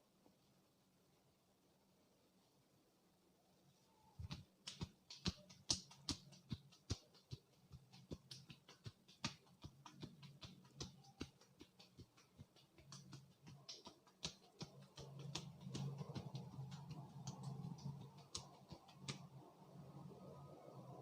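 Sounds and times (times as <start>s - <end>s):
hands tapping and slapping head: 4.2s - 19.4s.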